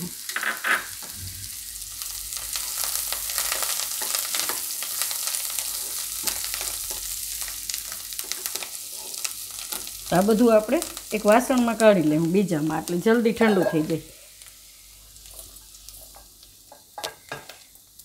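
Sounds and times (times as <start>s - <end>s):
vegetables sizzling in hot oil: 0.0s - 18.0s
stirring in a pan: 2.5s - 10.2s, 13.2s - 17.7s.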